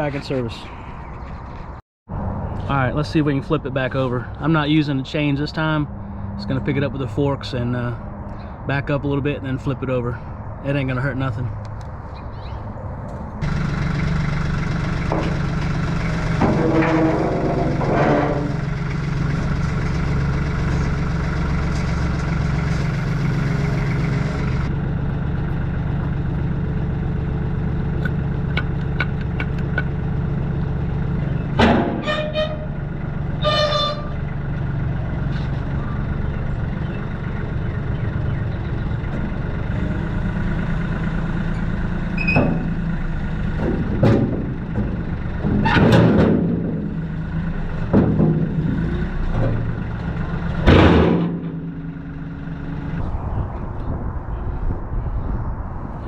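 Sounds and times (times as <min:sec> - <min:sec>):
loader engine running: 0:00.0 - 0:56.0
loud metal clangs: 0:15.0 - 0:19.1, 0:31.5 - 0:32.7, 0:42.2 - 0:43.0, 0:43.6 - 0:47.1, 0:47.8 - 0:52.2
metal clanking and ringing: 0:16.4 - 0:18.8.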